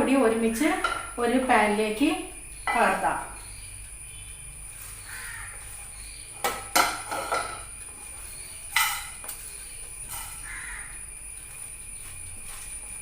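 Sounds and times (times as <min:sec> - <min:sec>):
spices and bowls clattering in pan: 0:06.4 - 0:10.5.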